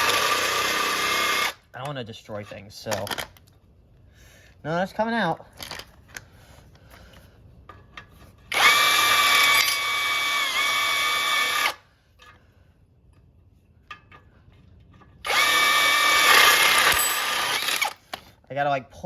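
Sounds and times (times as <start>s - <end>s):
power drill motor whine: 0.0s - 1.6s, 8.5s - 11.8s, 15.2s - 18.0s.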